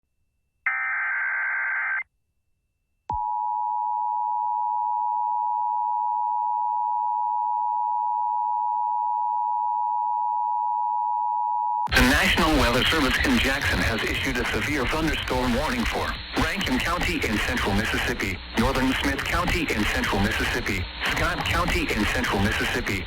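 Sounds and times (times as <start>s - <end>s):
digital data burst: 11.9s - 23.0s.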